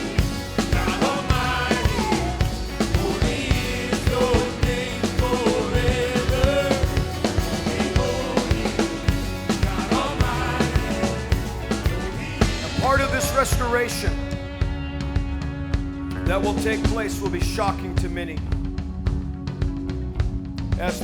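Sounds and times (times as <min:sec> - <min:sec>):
worship band music: 0:00.0 - 0:18.5
drum kit beat: 0:00.0 - 0:21.0
person singing: 0:00.6 - 0:12.7.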